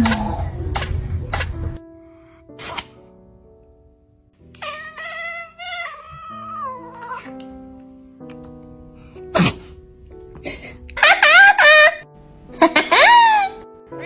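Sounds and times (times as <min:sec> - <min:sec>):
cat sneezing: 0:00.0 - 0:01.8, 0:02.6 - 0:03.0, 0:09.2 - 0:09.8
soft background music: 0:00.0 - 0:14.0
cat meowing: 0:04.6 - 0:07.4.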